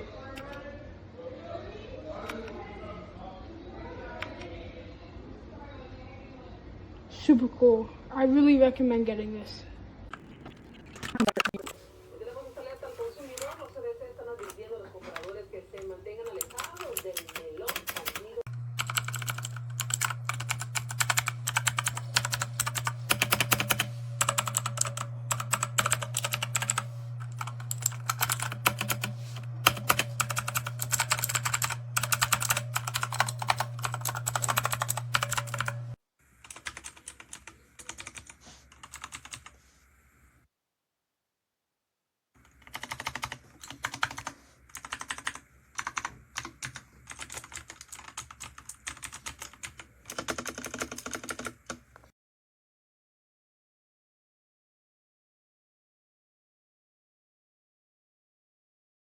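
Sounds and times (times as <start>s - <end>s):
steady low hum: 9.7s - 40.5s
mechanical keyboard typing: 15.2s - 39.5s, 42.4s - 51.8s.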